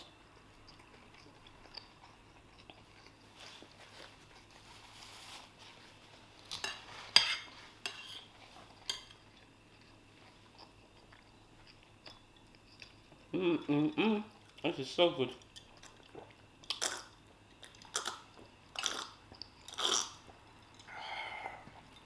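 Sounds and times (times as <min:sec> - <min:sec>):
cutlery clinking on a plate: 0:06.5 - 0:08.3.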